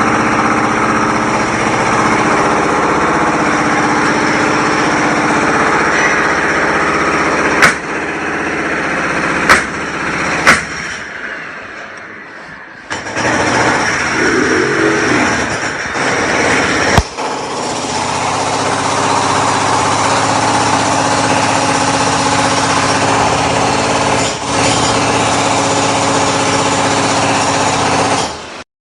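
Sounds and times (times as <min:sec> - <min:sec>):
machinery engine running: 0:00.0 - 0:10.8, 0:13.2 - 0:24.1
sharp bangs: 0:10.4 - 0:11.1.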